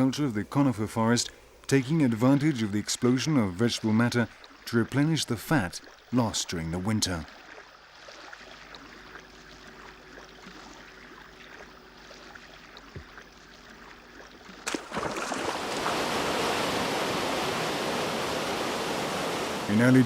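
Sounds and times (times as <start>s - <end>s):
faint outdoor hiss: 0.0s - 20.0s
rushing river water: 14.7s - 20.0s.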